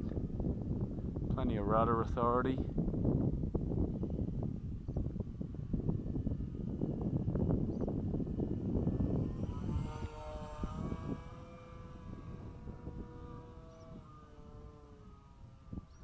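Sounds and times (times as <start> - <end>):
wind buffeting microphone: 0.0 - 16.0
model plane motor whining: 3.5 - 16.0.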